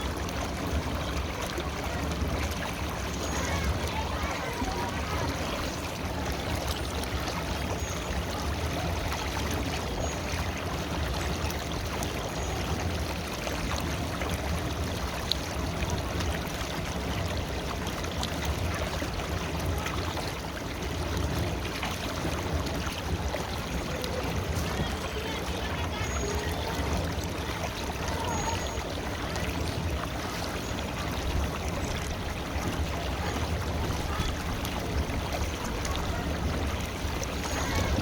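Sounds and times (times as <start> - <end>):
river water flowing over stones: 0.0 - 38.0.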